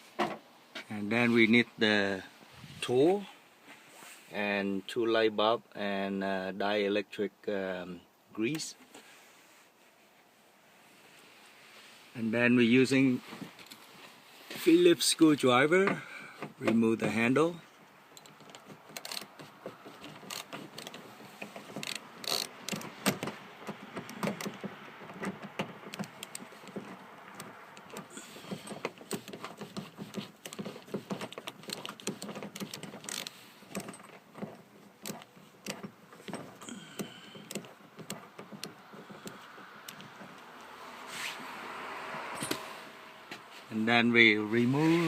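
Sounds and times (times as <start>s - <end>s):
screwdriver clicks and metallic rattles: 18.2s - 40.2s.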